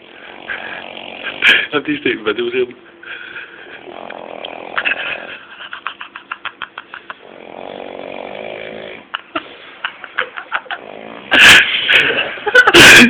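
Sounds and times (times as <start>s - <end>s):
man snoring: 0.0s - 1.7s, 3.7s - 5.3s, 7.2s - 9.1s, 10.8s - 12.3s.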